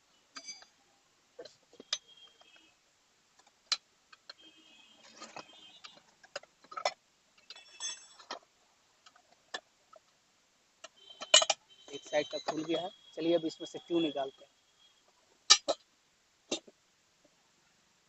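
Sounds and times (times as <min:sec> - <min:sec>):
tyre levers clinking on wheel rim: 0:11.2 - 0:11.6.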